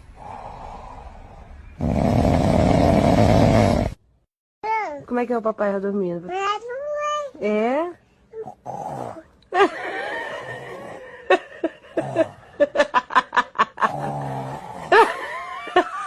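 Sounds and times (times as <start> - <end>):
boy imitating snoring: 1.8 - 4.0, 8.4 - 9.3, 13.9 - 14.9.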